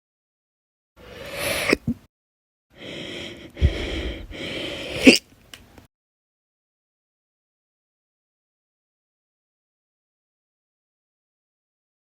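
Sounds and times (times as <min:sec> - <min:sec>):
woman hiccuping: 0:04.9 - 0:05.2.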